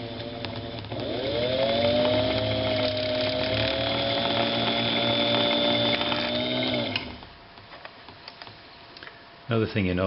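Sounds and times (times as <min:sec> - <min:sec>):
sewing machine motor whining: 0:00.0 - 0:07.2.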